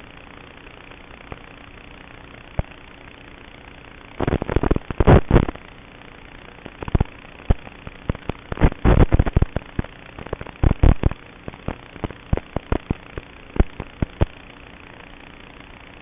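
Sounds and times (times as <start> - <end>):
faint hiss and hum: 0.0 - 16.0
sharp clicks and pops: 2.6 - 2.8, 4.2 - 5.6, 6.6 - 14.4.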